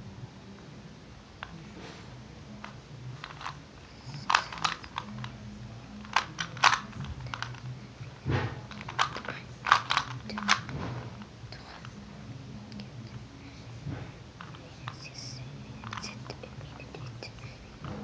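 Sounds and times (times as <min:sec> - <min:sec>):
faint low hum: 0:00.0 - 0:18.0
puzzle cube twisting clicks: 0:03.2 - 0:05.4, 0:06.0 - 0:07.7, 0:08.7 - 0:10.8, 0:15.8 - 0:17.4.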